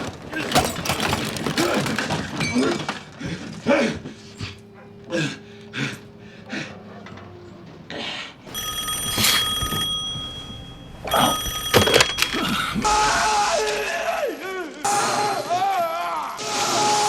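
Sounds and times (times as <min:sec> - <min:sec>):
telephone bell ringing: 0:08.4 - 0:13.8.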